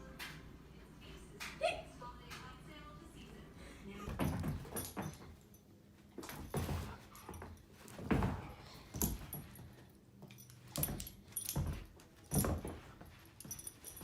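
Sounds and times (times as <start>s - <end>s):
light metallic jingling: 4.0s - 14.0s.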